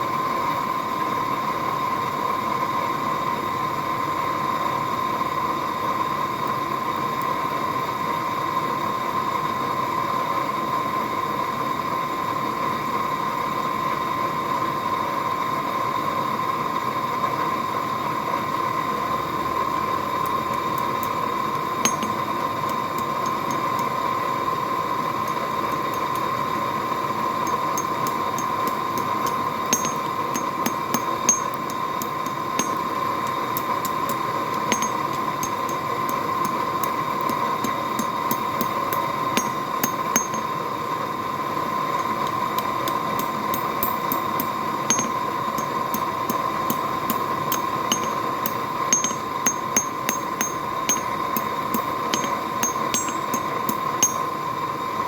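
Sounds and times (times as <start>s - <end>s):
light metal ticks and clinks: 20.2s - 24.0s, 25.2s - 26.4s, 27.4s - 40.6s, 42.0s - 54.4s.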